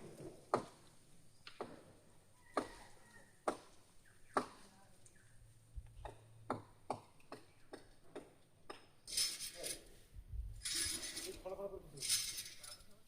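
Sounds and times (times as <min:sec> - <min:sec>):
chopping at a tree: 0:00.5 - 0:00.8, 0:01.5 - 0:01.9, 0:02.5 - 0:04.7, 0:06.0 - 0:08.9
rustling: 0:10.6 - 0:12.9.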